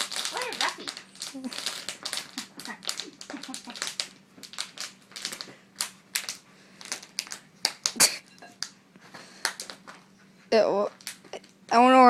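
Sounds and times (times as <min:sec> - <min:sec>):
puppy clicks and scratchy rustles: 0:00.0 - 0:08.0.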